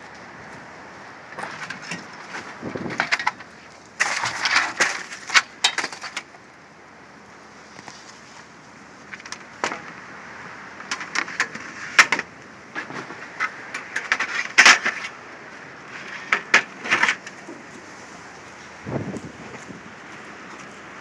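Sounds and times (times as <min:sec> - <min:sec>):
scrap metal clanking: 0:04.0 - 0:06.2, 0:15.9 - 0:17.7.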